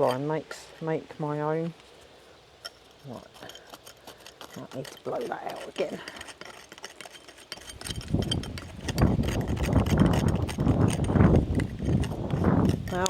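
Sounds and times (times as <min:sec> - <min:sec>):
gusty blowing with low rumble: 0:07.8 - 0:13.0.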